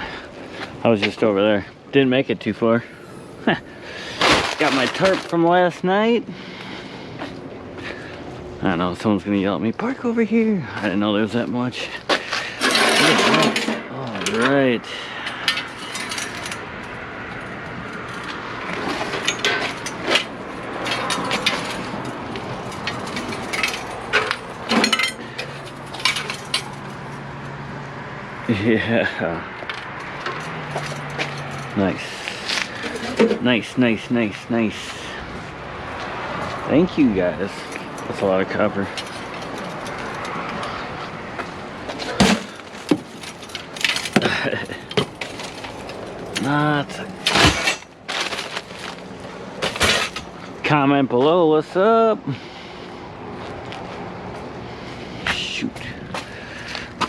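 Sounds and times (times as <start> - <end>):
background hum: 0.0 - 50.7
scrap metal clanking: 12.1 - 14.5, 15.3 - 16.7, 18.1 - 27.3, 30.0 - 33.6, 37.5 - 50.6.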